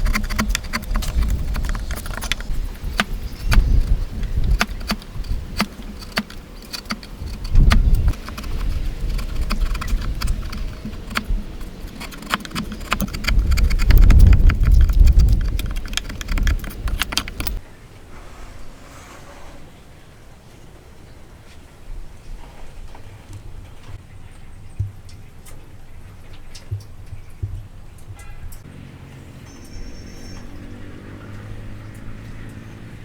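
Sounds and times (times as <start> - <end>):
sharp wooden clicks and taps: 0.0 - 17.6.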